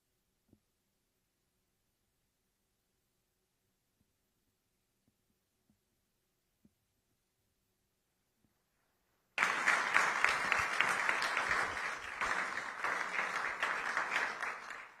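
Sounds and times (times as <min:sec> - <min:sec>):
audience applauding: 0:09.4 - 0:15.0.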